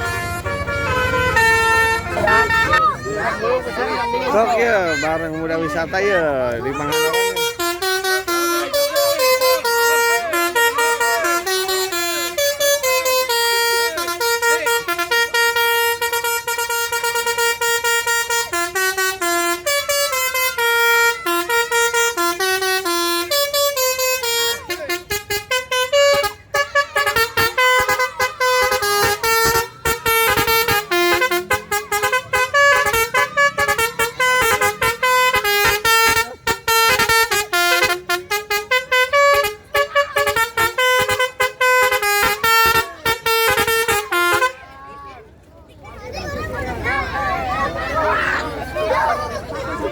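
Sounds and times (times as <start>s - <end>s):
musical bus horn playing tune: 0.0s - 44.7s.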